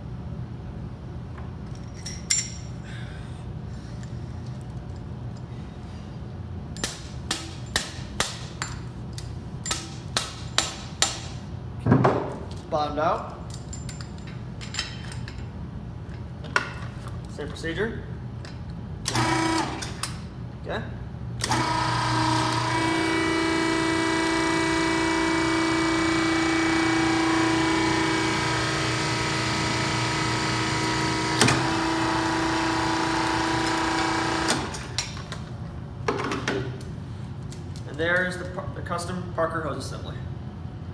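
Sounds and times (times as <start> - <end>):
low machine hum: 0.0 - 40.9
crimping machine humming: 21.4 - 35.0.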